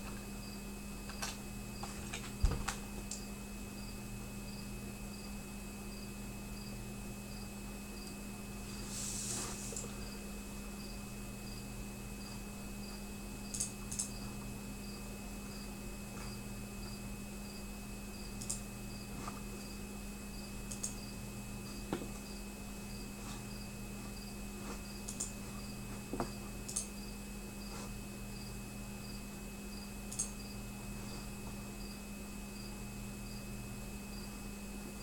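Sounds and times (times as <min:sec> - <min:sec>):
electrical hum: 0:00.0 - 0:35.0
cricket chirping: 0:03.1 - 0:08.2, 0:09.8 - 0:32.0, 0:32.6 - 0:34.4
faint clicks: 0:13.5 - 0:14.1, 0:18.4 - 0:18.6, 0:20.7 - 0:21.0, 0:30.1 - 0:30.3.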